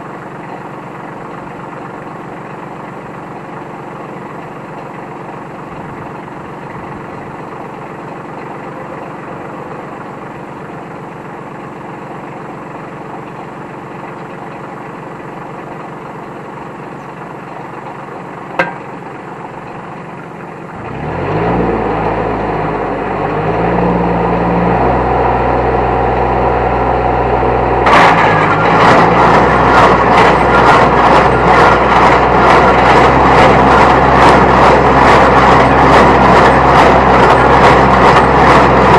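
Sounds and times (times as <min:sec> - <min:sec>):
tractor engine idling: 0:00.0 - 0:21.0, 0:24.0 - 0:38.9
baler clattering: 0:18.6 - 0:19.0.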